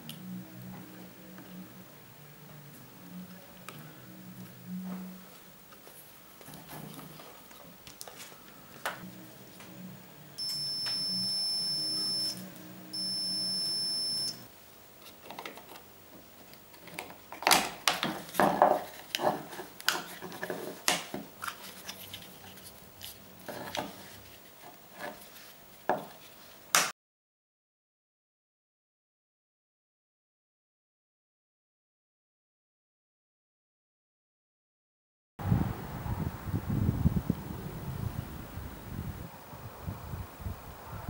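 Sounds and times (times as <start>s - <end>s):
high-pitched electronic beeps: 10.4s - 14.5s.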